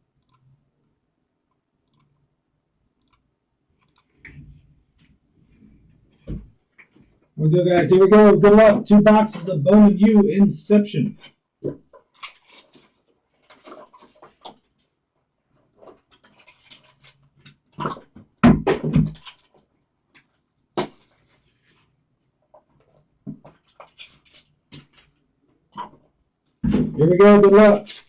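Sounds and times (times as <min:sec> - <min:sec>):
cardboard rustling and scraping: 0:12.4 - 0:14.8.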